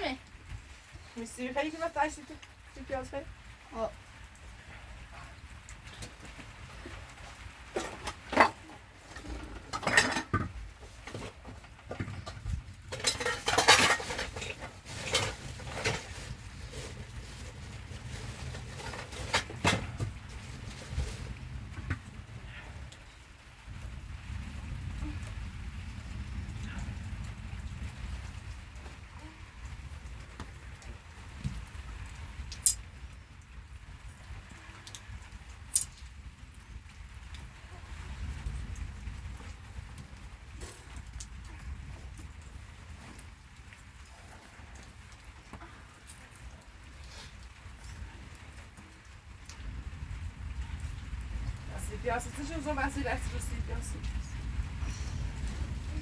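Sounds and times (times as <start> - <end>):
metal pots clattering: 7.7 - 20.0
steady low rumble: 49.2 - 56.0.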